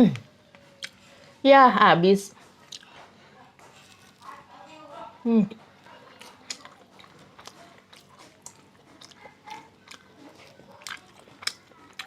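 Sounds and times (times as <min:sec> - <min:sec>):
person chewing with mouth clicks: 0:00.1 - 0:01.1, 0:02.6 - 0:04.4, 0:05.6 - 0:12.0.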